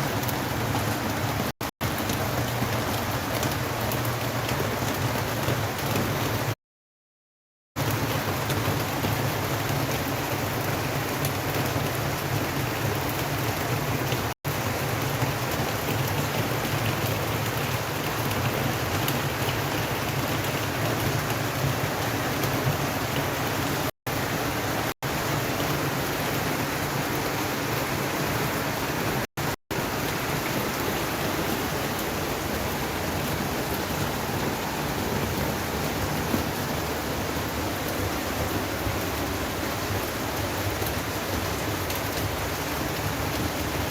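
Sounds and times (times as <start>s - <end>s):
steady rain hiss: 9.6s - 43.9s.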